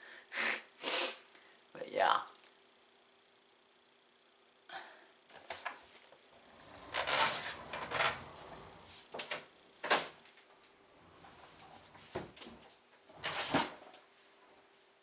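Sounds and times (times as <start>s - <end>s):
rustling and rubbing: 6.4s - 9.2s, 10.6s - 13.8s.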